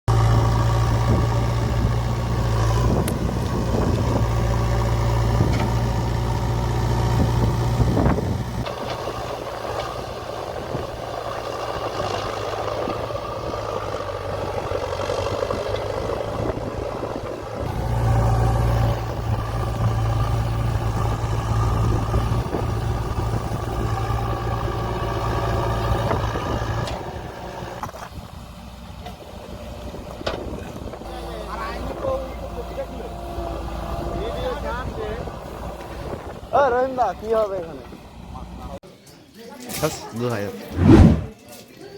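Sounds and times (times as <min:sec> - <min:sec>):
diesel engine revving: 0:00.1 - 0:36.5, 0:40.7 - 0:41.3.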